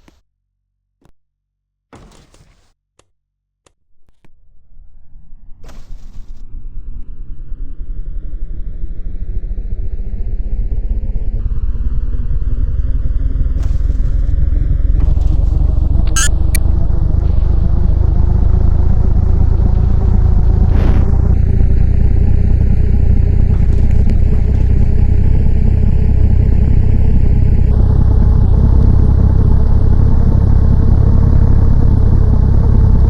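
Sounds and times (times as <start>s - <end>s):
heavy low rumble of fan: 6.4s - 33.0s
sharp clicks: 16.0s - 16.7s.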